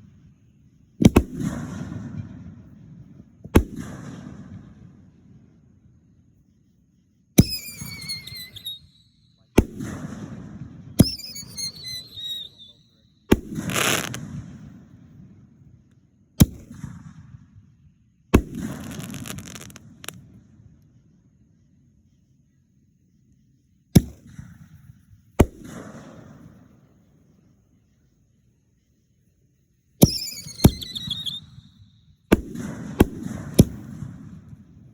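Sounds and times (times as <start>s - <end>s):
fireworks bangs: 1.0s - 5.1s, 7.4s - 9.0s, 9.6s - 15.3s, 18.4s - 20.4s, 30.0s - 34.9s
firework crackling: 7.4s - 9.0s, 11.0s - 14.4s, 18.4s - 20.2s, 30.0s - 31.7s
falling firework whistle: 7.4s - 14.3s, 18.4s - 20.2s, 30.0s - 34.6s.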